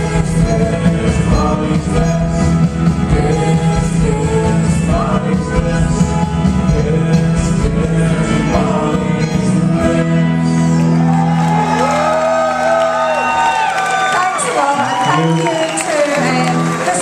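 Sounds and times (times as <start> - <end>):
person singing: 0.0 - 10.7
rock band playing live: 0.0 - 13.1.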